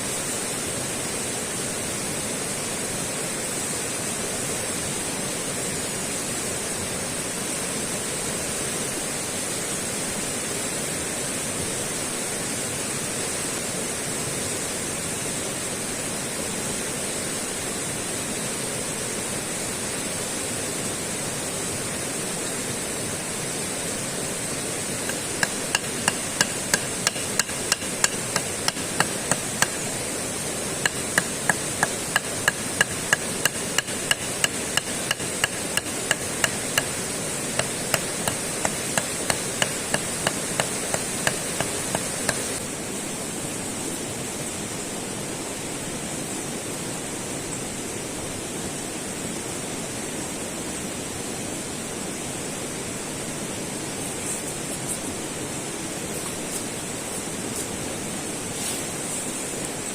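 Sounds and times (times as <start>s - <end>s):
steady rushing noise: 21.2s - 43.3s
ringing hammer blows: 25.1s - 29.9s, 30.9s - 37.0s.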